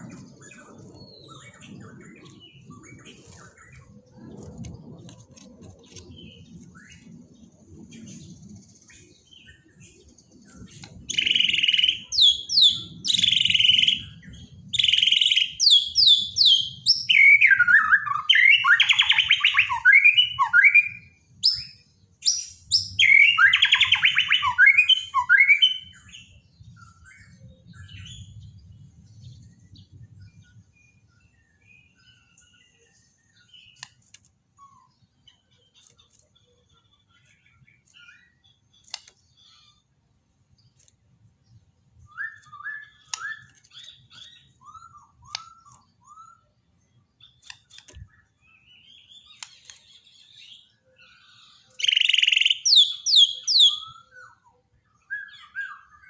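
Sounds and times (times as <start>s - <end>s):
bird singing: 0.0s - 4.4s, 5.8s - 56.0s
faint bird chirps: 41.5s - 56.0s.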